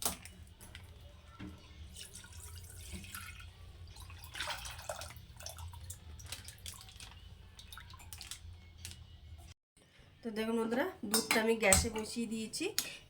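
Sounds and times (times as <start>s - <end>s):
milk pouring into a pan: 0.2s - 8.4s.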